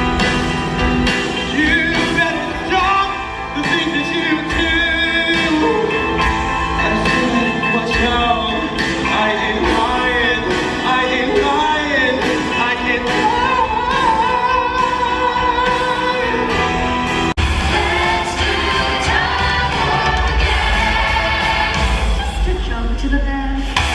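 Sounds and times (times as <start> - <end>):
live stage music with beat: 0.0 - 23.9
person singing: 1.4 - 16.9.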